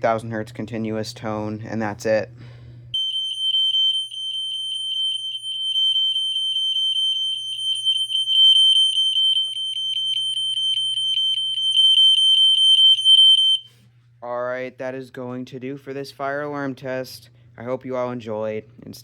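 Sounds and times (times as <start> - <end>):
fire alarm horn tone: 3.0 - 13.7.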